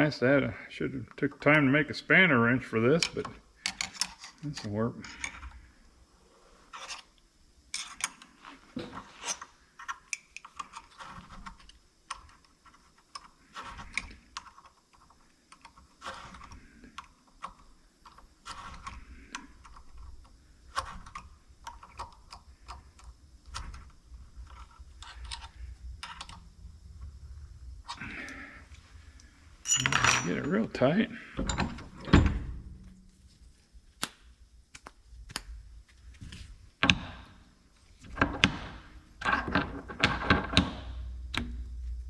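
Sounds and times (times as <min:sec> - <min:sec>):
faint low rumble: 0:23.2 - 0:36.7, 0:40.4 - 0:42.0.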